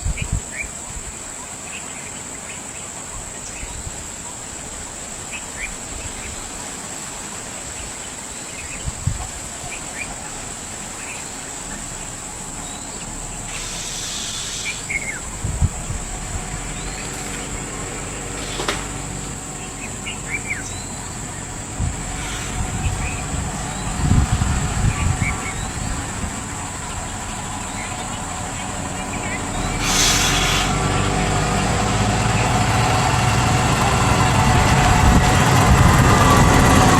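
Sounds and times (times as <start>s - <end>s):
steady high hiss: 0.0s - 34.8s
vehicle engine idling: 10.2s - 36.9s.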